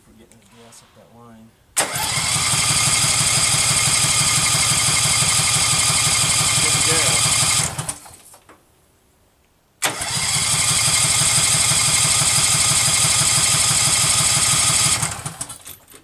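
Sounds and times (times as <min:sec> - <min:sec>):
engine cranking without firing: 0:01.8 - 0:08.4, 0:09.8 - 0:15.6.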